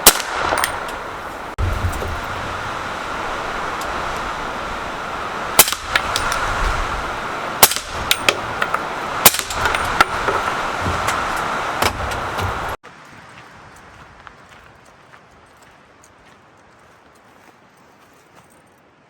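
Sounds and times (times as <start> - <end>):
suppressed rifle shots: 0.0 - 1.0, 5.6 - 6.5, 7.6 - 10.3
steady background noise: 0.0 - 19.0.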